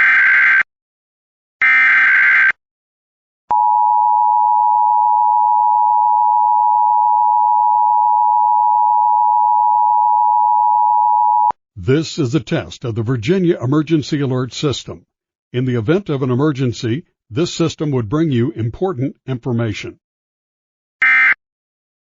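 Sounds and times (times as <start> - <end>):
two-tone alert signal: 21.0 - 21.4.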